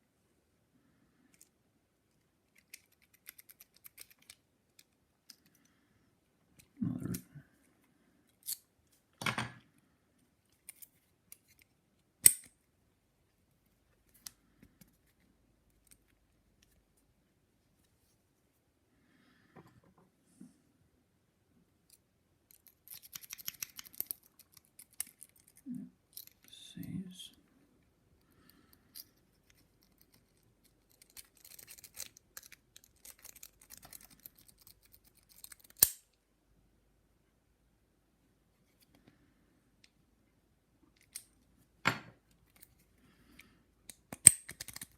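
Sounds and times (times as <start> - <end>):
lockpick scraping: 2.4 - 5.5, 22.5 - 26.5, 28.9 - 36.0, 43.9 - 44.9
lockpicking tools clicking: 2.6 - 5.5, 43.9 - 44.9.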